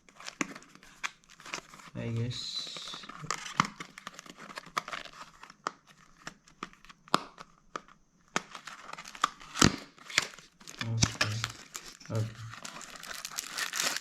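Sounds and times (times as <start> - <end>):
plastic crinkling and rustling: 0.0 - 14.0
clicks and taps of box: 6.6 - 8.6.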